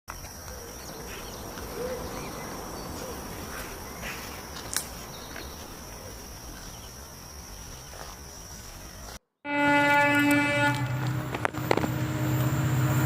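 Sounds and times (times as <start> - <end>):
insects trilling: 0.1 - 9.2.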